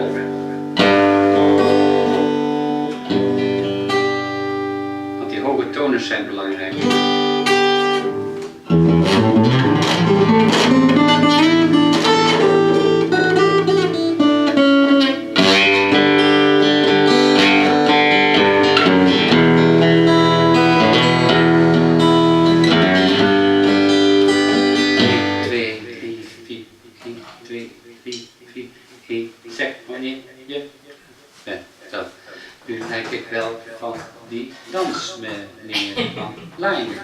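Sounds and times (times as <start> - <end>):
guitar strumming chords: 0.0 - 28.5.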